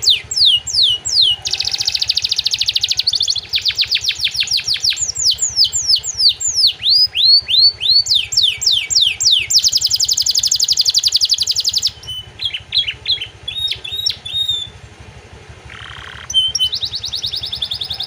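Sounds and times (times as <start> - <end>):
canary singing: 0.0 - 18.0.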